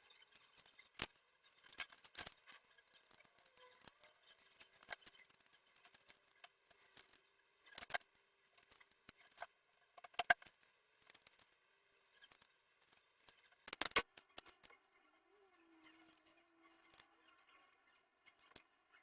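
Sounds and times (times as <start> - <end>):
faint steady hum: 2.3 - 19.0
small objects clicking and tapping: 8.6 - 11.5, 12.2 - 14.8.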